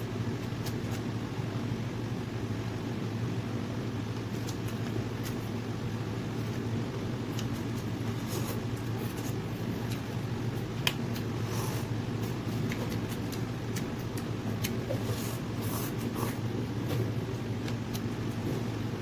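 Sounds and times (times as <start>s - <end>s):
steady low hum: 0.0s - 19.0s
eating clicks and smacks: 12.2s - 14.9s.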